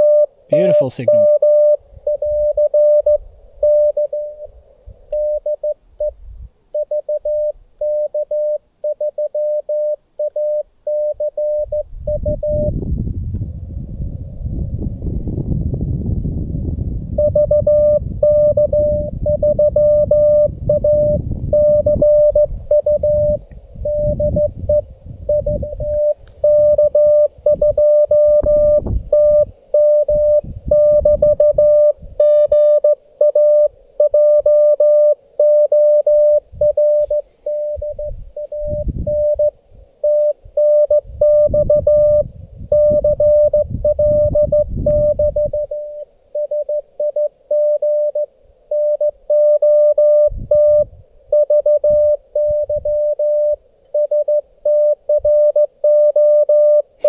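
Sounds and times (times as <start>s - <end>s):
morse code tone: 0.0s - 4.5s, 6.8s - 12.8s, 17.2s - 56.9s
low rumble: 12.2s - 19.7s.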